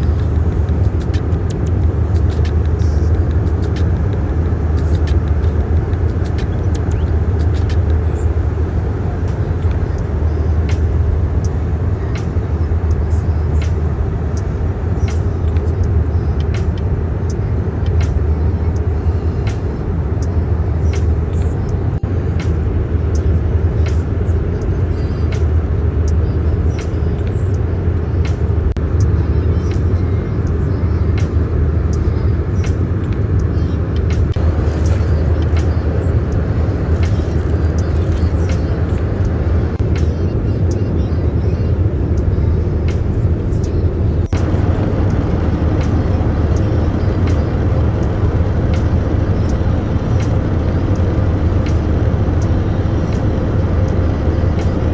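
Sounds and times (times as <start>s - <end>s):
vehicle interior rumble: 0.0s - 54.9s
sharp clicks and rattles: 34.0s - 40.2s, 42.8s - 54.9s.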